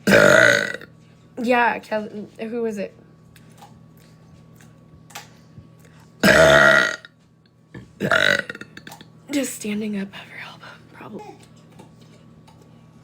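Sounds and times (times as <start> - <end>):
woman burping: 0.0 - 0.9, 6.2 - 7.1, 8.0 - 9.0.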